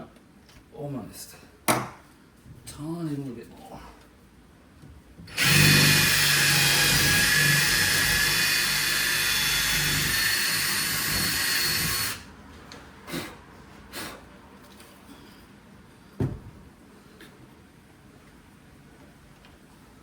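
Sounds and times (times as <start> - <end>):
power drill running: 5.3 - 12.3.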